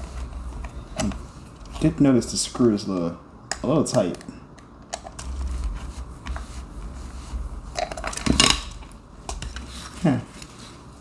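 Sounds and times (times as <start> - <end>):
low handling rumble: 0.0 - 2.9, 5.2 - 11.0.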